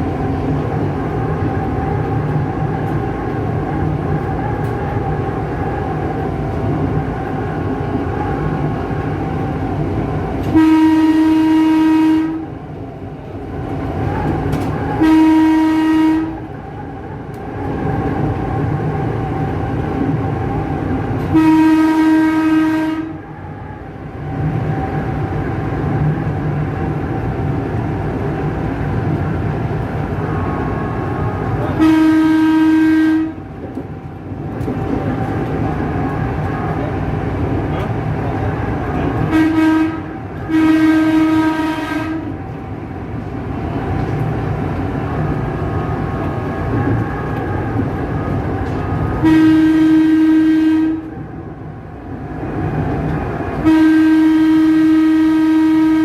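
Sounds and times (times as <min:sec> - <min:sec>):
train running noise: 0:00.0 - 0:56.0
train horn blasts: 0:10.4 - 0:12.6, 0:15.0 - 0:16.5, 0:21.2 - 0:23.2, 0:31.6 - 0:33.5, 0:39.2 - 0:42.4, 0:49.1 - 0:51.2, 0:53.6 - 0:56.0.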